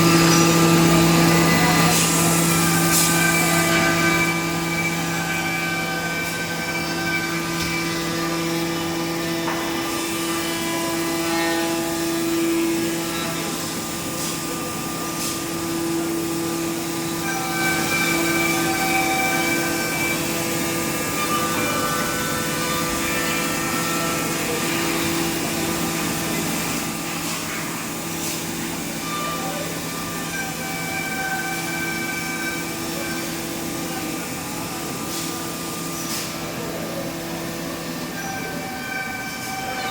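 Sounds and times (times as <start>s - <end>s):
machine motor hum: 0.0s - 38.1s.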